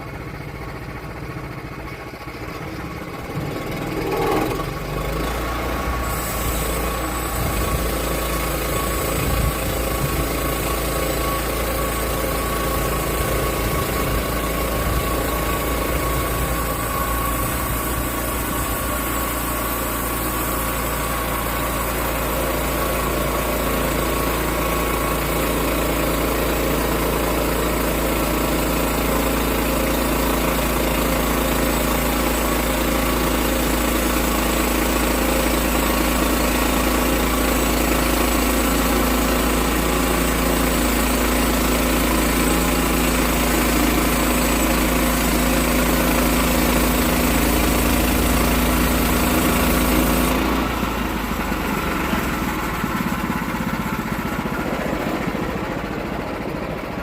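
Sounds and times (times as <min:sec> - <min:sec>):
sawmill engine running: 0:00.0 - 0:57.0.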